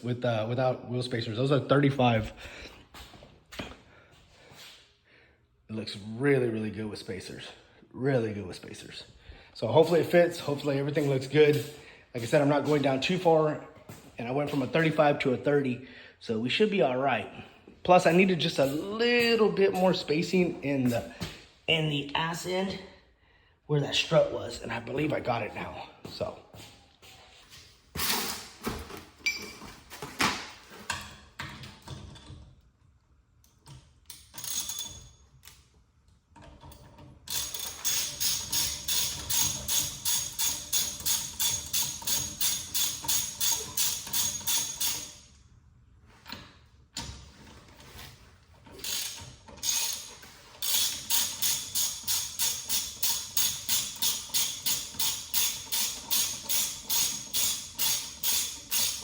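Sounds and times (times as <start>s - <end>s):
hand ratchet clicking: 33.5s - 35.6s, 36.7s - 45.3s, 48.7s - 59.0s.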